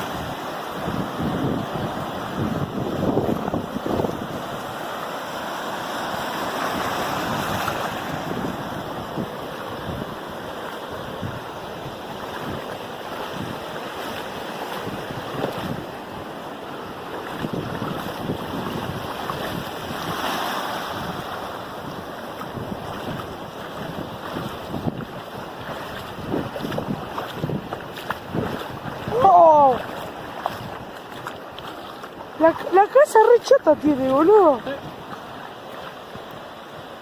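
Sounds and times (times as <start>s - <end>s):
wind buffeting microphone: 0.0s - 5.0s, 6.2s - 36.9s
ocean surf washing in: 0.0s - 30.9s.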